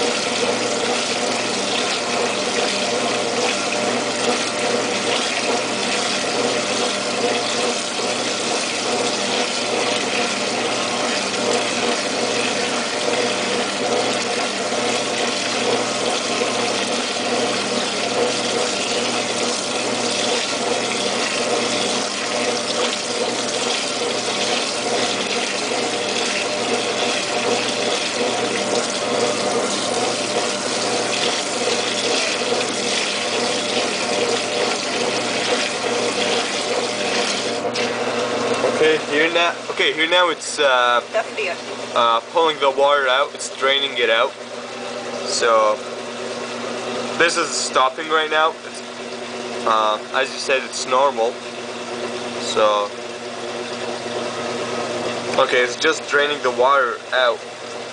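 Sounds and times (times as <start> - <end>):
motor hum: 0.0 - 57.9
water rushing in washing machine: 0.0 - 57.9.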